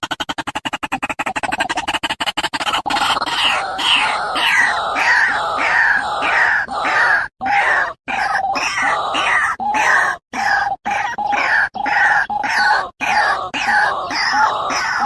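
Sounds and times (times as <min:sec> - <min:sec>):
bird harsh calls: 0:00.0 - 0:15.0.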